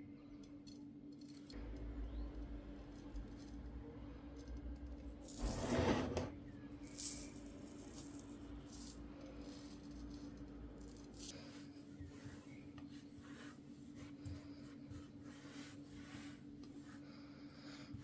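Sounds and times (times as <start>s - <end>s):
rustle or scrape: 5.3s - 9.6s.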